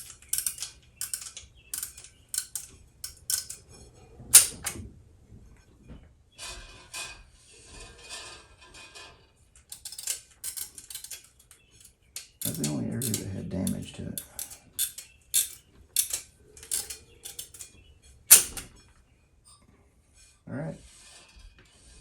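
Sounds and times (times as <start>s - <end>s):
small metal parts clicking: 0.0s - 4.8s, 9.6s - 18.8s.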